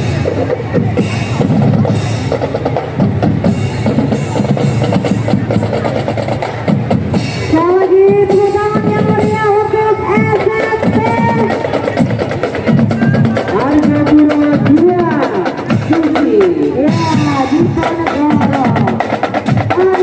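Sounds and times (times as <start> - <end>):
snare and bass drums beating: 0.0 - 20.0
wind instruments long held notes: 7.2 - 19.1.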